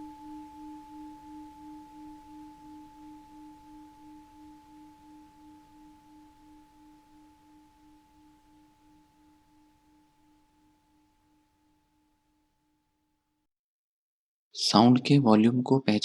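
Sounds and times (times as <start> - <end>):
singing bowl ringing: 0.0 - 12.4.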